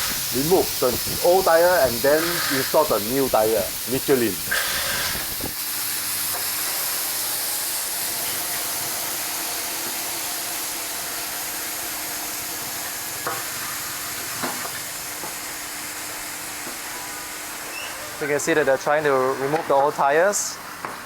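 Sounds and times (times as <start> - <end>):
air hissing from a tyre: 0.0 - 10.8.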